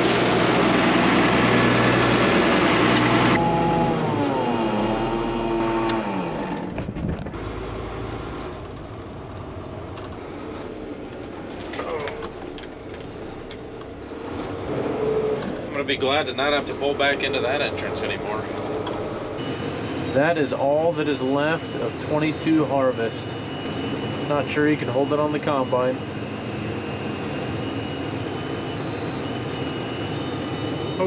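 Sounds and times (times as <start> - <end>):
machinery clatter: 0.0 - 3.5
engine winding down: 0.0 - 25.7.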